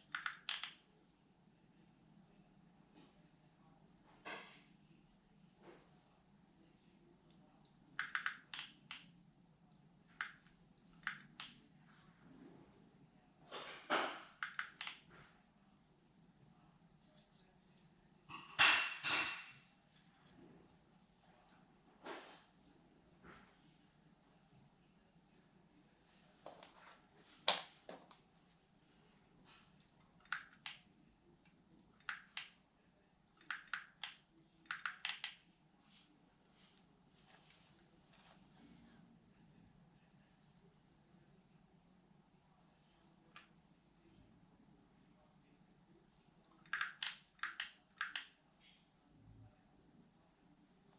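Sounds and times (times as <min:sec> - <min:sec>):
hard objects clicking: 0:00.0 - 0:00.8, 0:08.0 - 0:09.1, 0:14.4 - 0:15.0, 0:33.4 - 0:35.4, 0:46.7 - 0:48.3.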